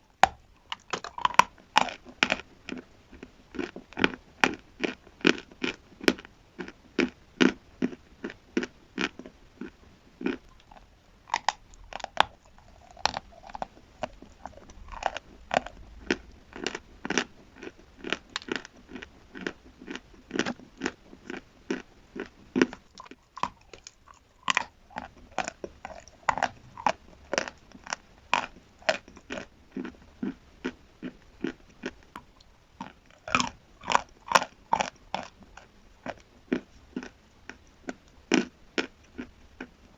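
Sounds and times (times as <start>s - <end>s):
chalk being chewed: 10.3s - 39.7s.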